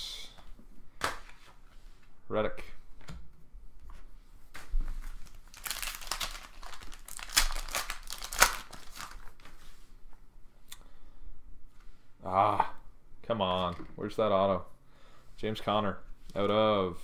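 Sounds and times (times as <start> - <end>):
foil wrapper crinkling and tearing: 5.1 - 9.6.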